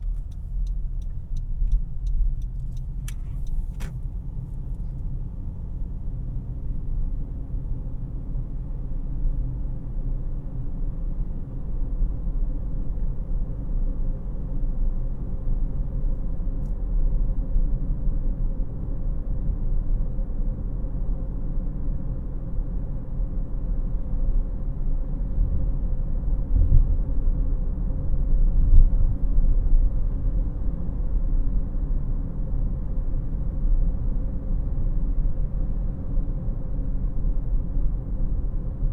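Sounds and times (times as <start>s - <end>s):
car engine running: 0.0s - 8.1s.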